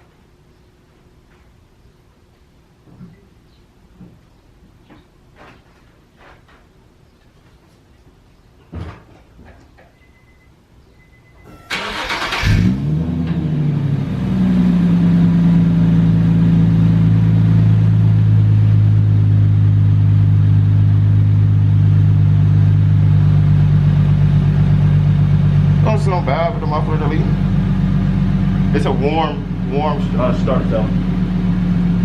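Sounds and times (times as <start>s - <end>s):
short beep: 10.0s - 11.9s
car engine revving and idling: 11.7s - 32.0s.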